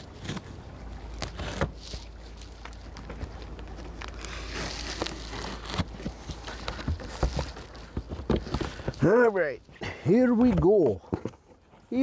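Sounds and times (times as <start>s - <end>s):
steady low rumble: 0.0s - 6.9s
cardboard rustling: 0.0s - 9.3s.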